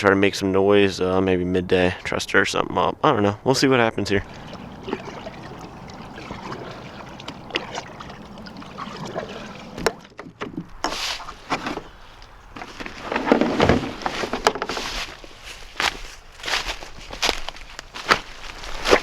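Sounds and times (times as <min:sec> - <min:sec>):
water noise: 0:04.0 - 0:10.2, 0:10.8 - 0:19.0.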